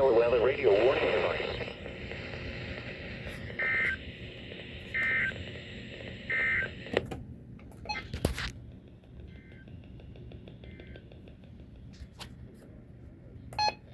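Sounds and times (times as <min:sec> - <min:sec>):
two-tone warbling data buzz: 0:00.0 - 0:07.0
static burst: 0:00.0 - 0:07.1.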